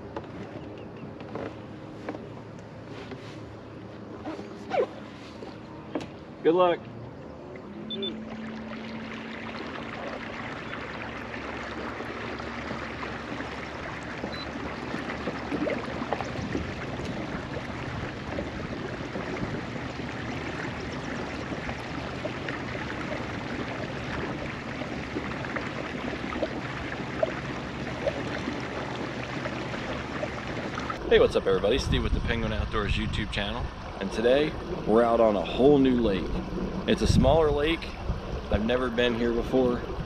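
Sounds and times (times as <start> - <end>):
water lapping against kayak hull: 0.0 - 40.0
small splashes and ticks: 8.2 - 31.0.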